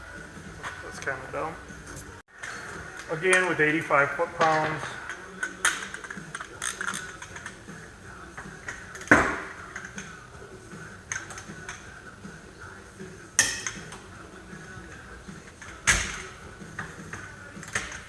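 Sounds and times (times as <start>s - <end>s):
metal tools clinking: 4.4s - 7.7s, 13.4s - 14.0s.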